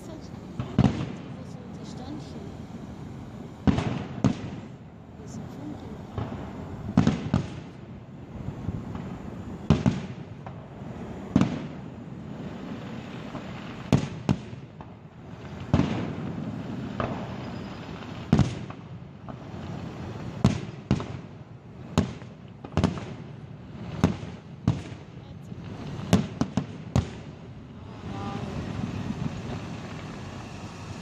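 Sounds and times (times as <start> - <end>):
fireworks shells bursting: 15.5 - 18.8.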